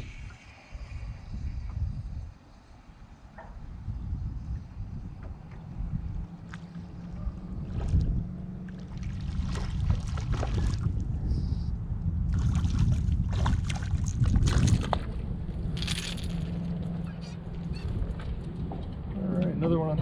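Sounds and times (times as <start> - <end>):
boat motor rumble: 0.0 - 20.0
wind surges: 0.0 - 20.0
water splashing against hull: 5.1 - 11.2, 12.2 - 16.7.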